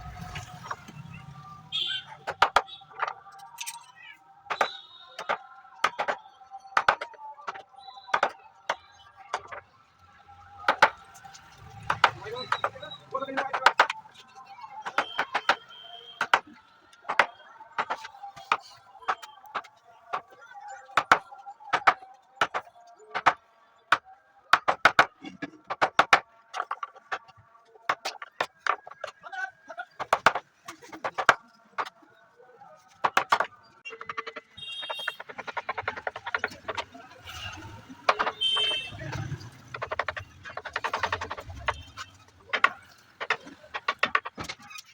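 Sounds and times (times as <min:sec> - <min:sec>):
hand tools striking wood: 0:02.2 - 0:03.8, 0:04.5 - 0:06.2, 0:06.8 - 0:09.6, 0:10.6 - 0:14.1, 0:14.8 - 0:20.3, 0:21.0 - 0:24.0, 0:24.6 - 0:29.2, 0:30.0 - 0:31.9, 0:32.9 - 0:44.7
sharp knocks on wood: 0:11.8 - 0:12.8, 0:14.8 - 0:16.5, 0:38.1 - 0:44.6.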